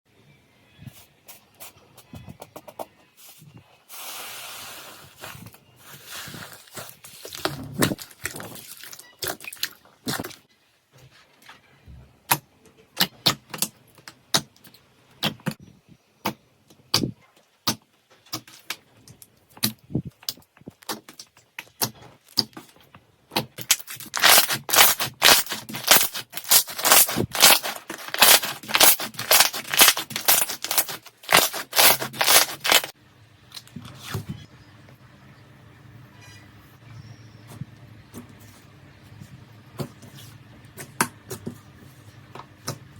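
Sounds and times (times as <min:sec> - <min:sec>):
slime crust crackling: 0:23.6 - 0:32.9.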